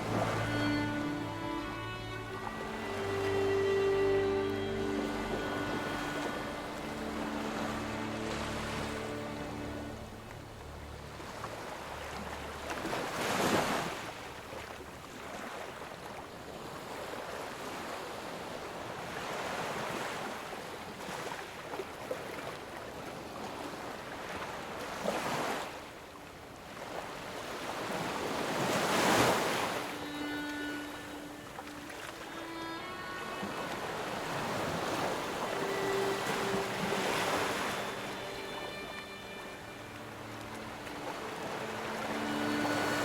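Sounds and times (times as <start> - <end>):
ocean waves washing in: 0.0 - 15.8, 26.9 - 43.0
big waves breaking: 0.0 - 43.0.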